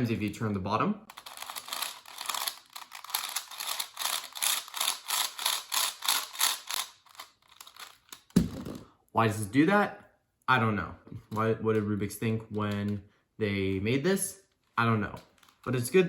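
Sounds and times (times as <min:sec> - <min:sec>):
puzzle cube clicking and scraping: 0:00.0 - 0:08.3.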